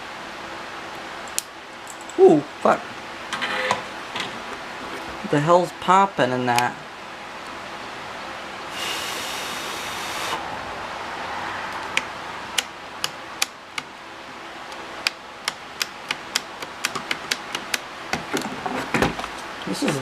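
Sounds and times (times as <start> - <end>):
solder hiss: 8.7 - 10.5.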